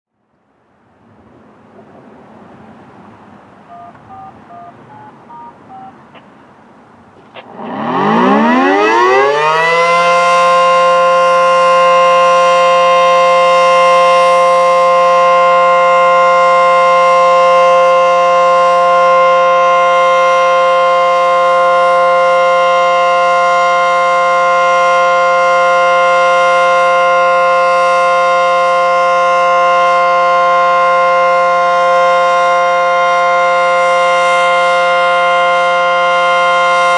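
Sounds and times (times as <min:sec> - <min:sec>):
faint short beeps: 0:03.7 - 0:06.0
two-tone warning siren: 0:03.7 - 0:06.0, 0:07.4 - 0:36.9.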